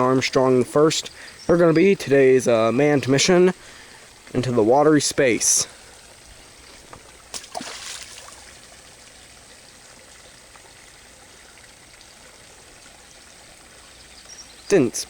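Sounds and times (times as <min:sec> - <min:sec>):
creek trickling: 0:00.0 - 0:15.0
stone splashing into water: 0:07.3 - 0:08.6.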